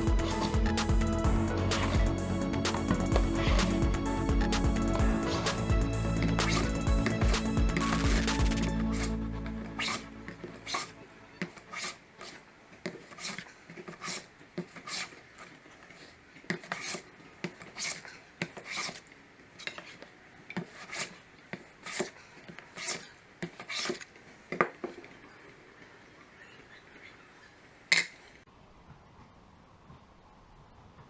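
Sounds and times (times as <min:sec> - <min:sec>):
hand tool rasping wood: 0:00.0 - 0:09.1, 0:09.7 - 0:20.0, 0:20.6 - 0:24.7.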